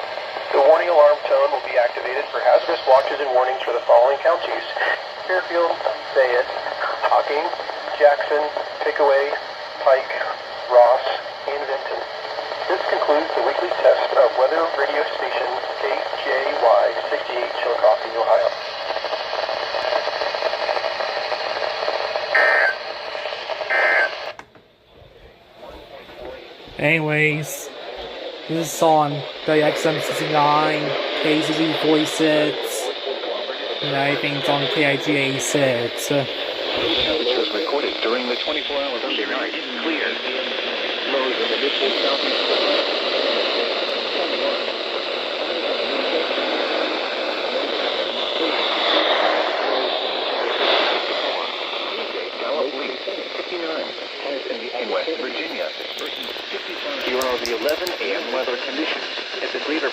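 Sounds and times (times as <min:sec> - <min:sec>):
radio static hiss: 0:00.0 - 0:59.9
short data bursts: 0:22.2 - 0:24.4.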